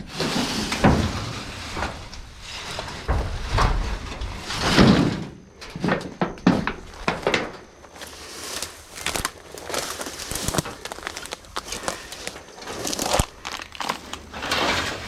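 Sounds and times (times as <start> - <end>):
dry leaves rustling and crackling: 7.8 - 14.6.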